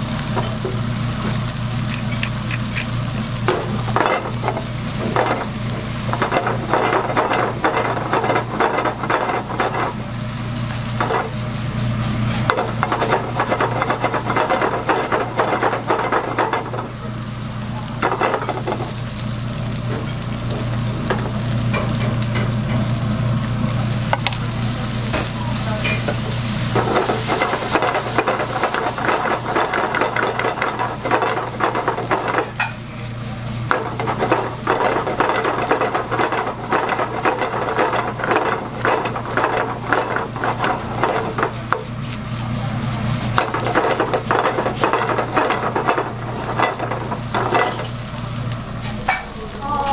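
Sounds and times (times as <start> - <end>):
egg sizzling in a pan: 0.0 - 49.9
utensil scraping a pan: 3.6 - 10.0, 11.0 - 16.9, 33.7 - 48.0.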